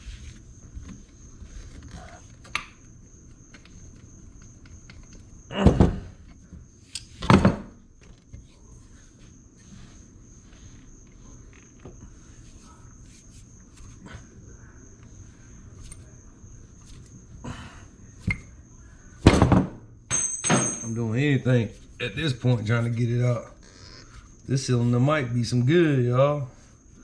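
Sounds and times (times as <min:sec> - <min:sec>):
loud knocks on metal cylinder: 0:19.3 - 0:20.8.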